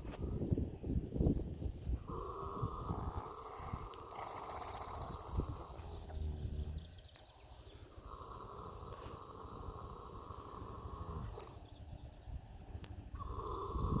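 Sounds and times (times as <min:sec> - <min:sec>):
horse snoring: 0:02.1 - 0:07.0, 0:07.9 - 0:11.9, 0:13.0 - 0:14.0.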